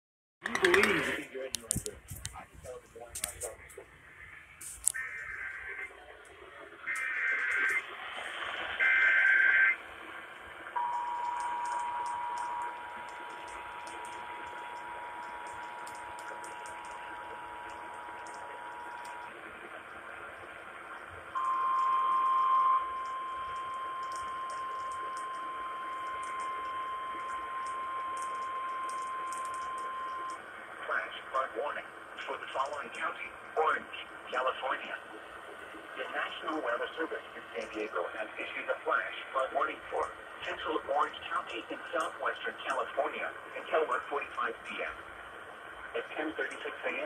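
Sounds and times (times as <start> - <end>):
screeching digital data burst: 6.9 - 7.9, 8.8 - 9.8
two-tone attention signal: 10.8 - 19.3, 21.4 - 30.4.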